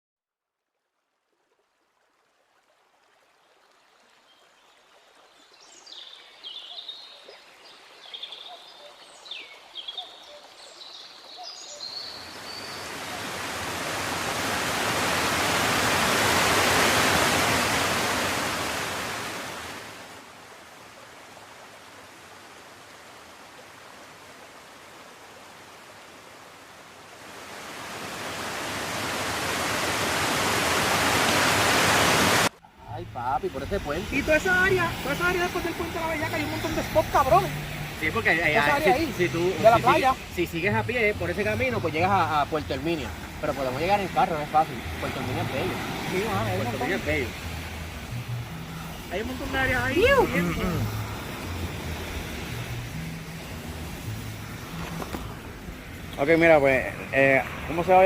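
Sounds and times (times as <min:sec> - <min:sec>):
birds chirping: 0:05.4 - 0:17.7, 0:32.1 - 0:58.0
surf rushing: 0:12.3 - 0:20.2, 0:27.2 - 0:58.0.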